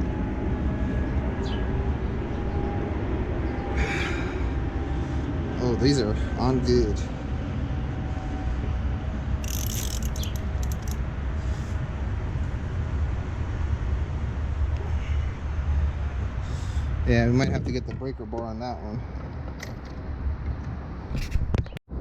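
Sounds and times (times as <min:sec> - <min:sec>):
steady low rumble: 0:00.0 - 0:22.0
socket ratchet clicking: 0:09.4 - 0:11.0.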